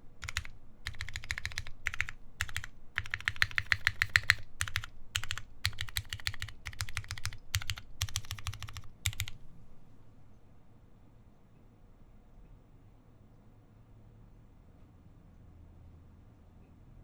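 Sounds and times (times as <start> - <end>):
mechanical keyboard typing: 0.0 - 9.9.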